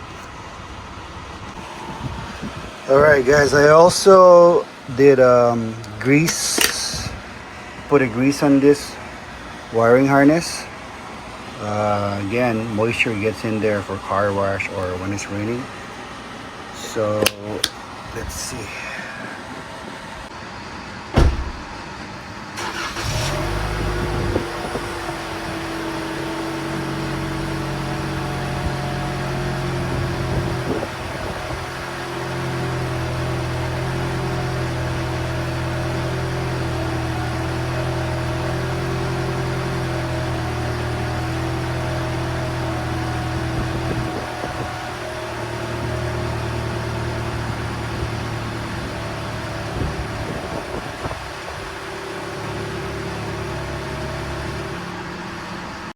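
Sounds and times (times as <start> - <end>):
car engine starting and idling: 0.0 - 55.9
sharp knock: 21.2 - 21.8.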